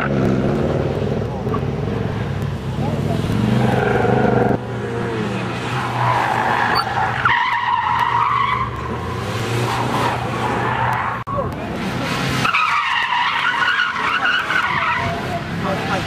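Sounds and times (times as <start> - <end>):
car engine revving hard: 0.0 - 7.2, 8.0 - 10.6
tyres squealing: 5.2 - 16.0.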